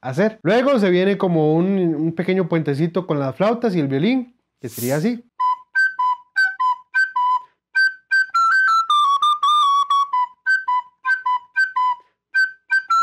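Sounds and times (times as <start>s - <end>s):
recorder playing folk melody: 5.4s - 13.0s.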